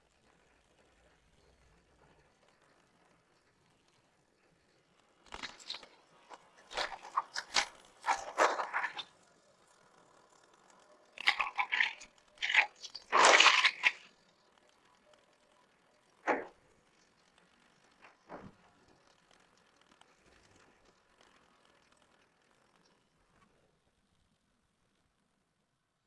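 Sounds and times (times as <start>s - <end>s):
gritty material crunching and scraping: 5.3s - 9.1s, 11.1s - 14.2s, 16.3s - 16.5s, 17.9s - 18.6s.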